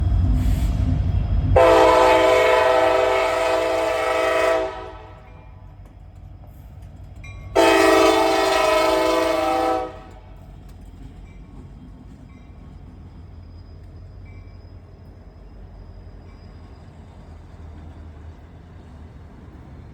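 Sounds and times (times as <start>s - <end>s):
low rumble of moving train: 0.0s - 19.9s
train air horn blasts: 1.6s - 5.3s, 7.6s - 10.4s.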